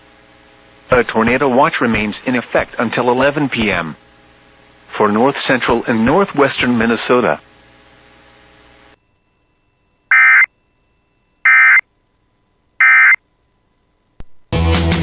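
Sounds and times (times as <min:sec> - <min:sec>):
faint hum: 0:00.0 - 0:14.5
short loud buzzing data tones: 0:10.1 - 0:10.8, 0:11.4 - 0:11.9, 0:12.8 - 0:13.2
music: 0:14.5 - 0:15.0.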